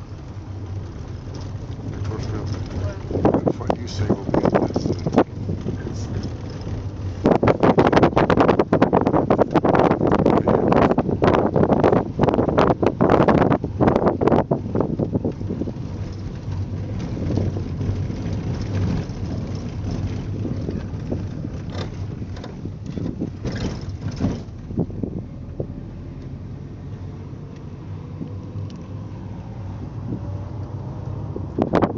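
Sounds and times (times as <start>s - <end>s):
knocks and rattles: 0.0s - 11.0s, 15.0s - 24.9s
engine and road hum: 0.0s - 31.9s.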